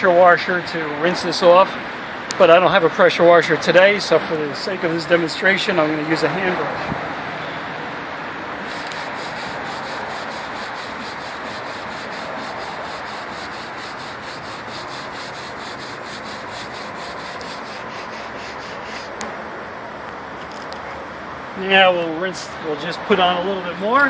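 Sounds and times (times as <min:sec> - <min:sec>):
brush scrubbing wooden board: 0:08.6 - 0:19.2.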